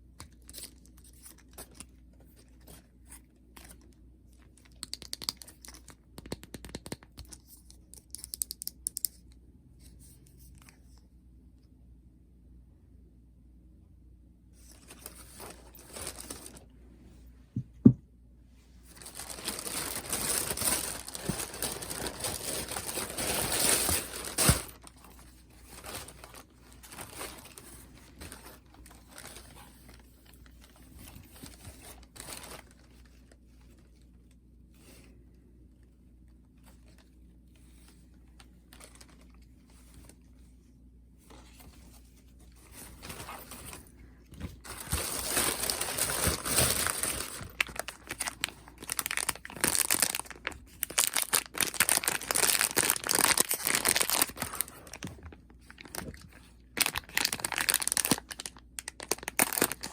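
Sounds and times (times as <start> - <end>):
packaging crinkling: 14.6 - 16.6, 18.9 - 33.9, 37.8 - 40.2, 42.4 - 59.9.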